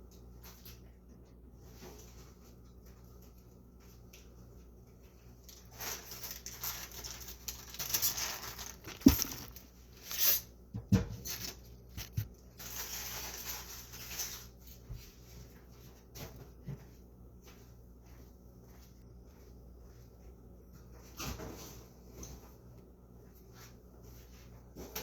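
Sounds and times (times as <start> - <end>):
rustling crinkling: 5.4 - 10.4, 11.3 - 14.7.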